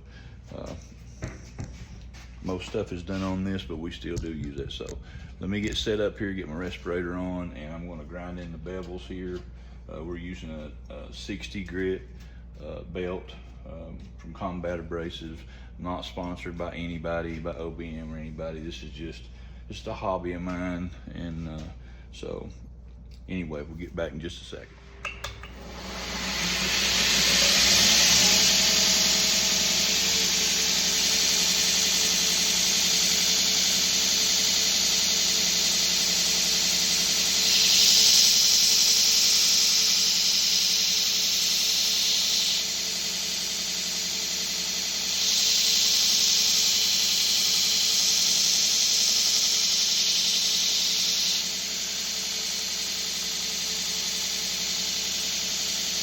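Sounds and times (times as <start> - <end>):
belt grinder running with hiss: 25.0 - 56.0
steel grinding against belt: 25.2 - 42.6.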